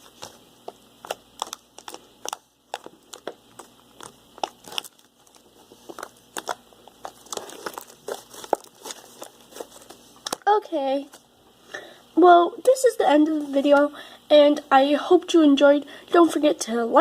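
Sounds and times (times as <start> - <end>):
slime crackling and popping: 0.1 - 10.6.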